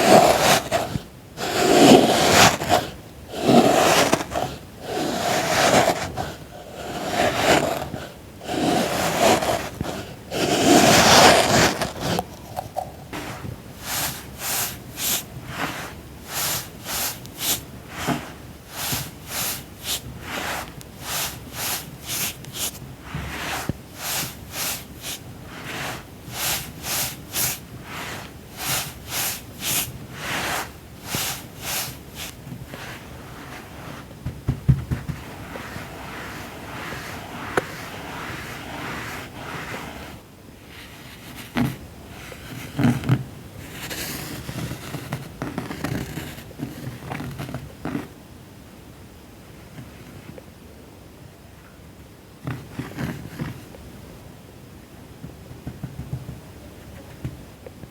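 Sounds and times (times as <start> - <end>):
tool cutting crunchy sand: 0.0 - 33.0.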